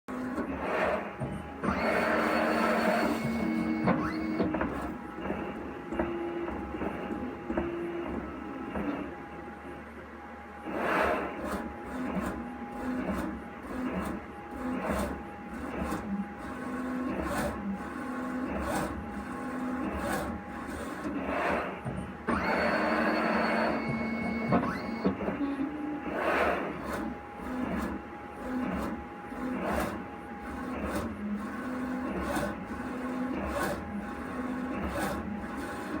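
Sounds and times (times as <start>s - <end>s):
printer motors whirring and clicking: 0.1s - 36.0s
steady machine hum: 0.1s - 36.0s.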